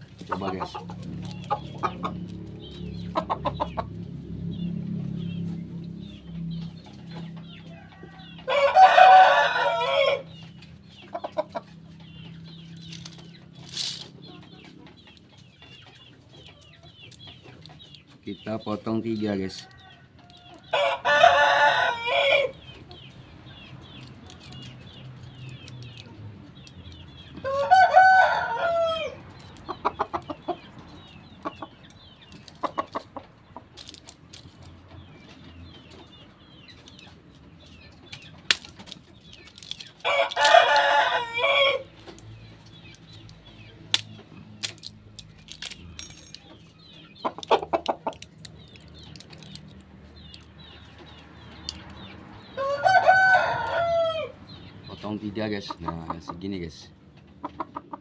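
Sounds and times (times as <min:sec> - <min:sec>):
hens clucking: 0:00.0 - 0:44.6, 0:46.5 - 0:58.0
roosters crowing: 0:06.9 - 0:10.6, 0:19.2 - 0:22.9, 0:27.0 - 0:30.8, 0:39.5 - 0:42.4, 0:52.3 - 0:56.0.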